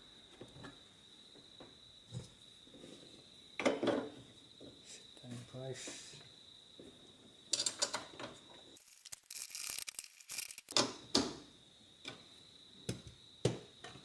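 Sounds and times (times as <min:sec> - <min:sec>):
plastic parts scraping: 0:08.8 - 0:10.8
rapid ratchet-like clicking: 0:08.8 - 0:10.8.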